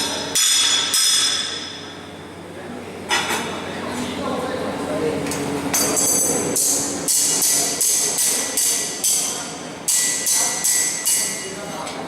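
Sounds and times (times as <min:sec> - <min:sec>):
hammer striking metal: 0:00.0 - 0:01.9, 0:05.8 - 0:11.5.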